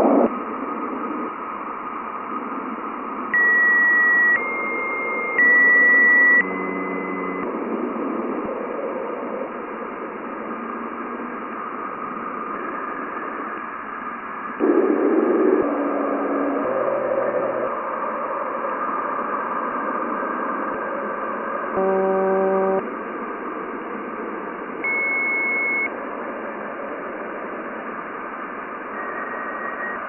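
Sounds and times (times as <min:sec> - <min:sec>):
steady static hiss: 0:00.0 - 0:23.2
short steady beep-like tones: 0:03.4 - 0:07.5, 0:21.8 - 0:22.8, 0:24.8 - 0:25.9, 0:29.0 - 0:30.0.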